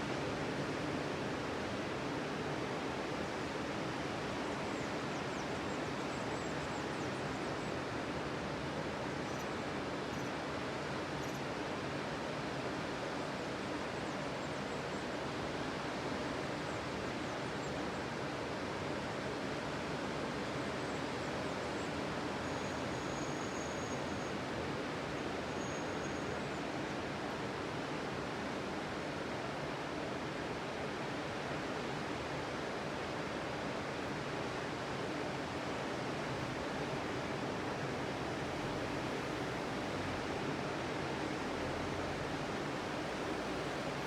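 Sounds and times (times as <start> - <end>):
ocean surf on a beach: 35.0 - 44.0.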